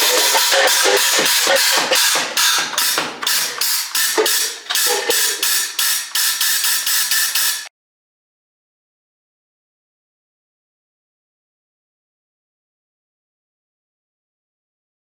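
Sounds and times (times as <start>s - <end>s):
compressed air blaster shots: 0.0s - 7.7s.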